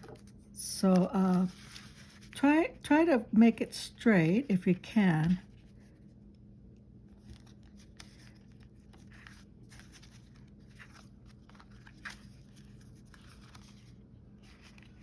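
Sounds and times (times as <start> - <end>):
cardstock rustling and scraping: 0.0 - 2.4, 7.2 - 15.0
faint steady hum: 0.0 - 15.0.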